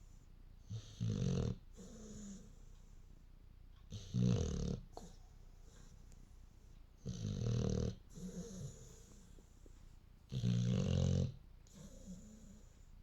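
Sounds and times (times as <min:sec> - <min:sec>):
loud buzzing snores: 0:03.9 - 0:04.8, 0:07.0 - 0:08.7, 0:10.3 - 0:12.5
soft breathing: 0:08.1 - 0:10.0.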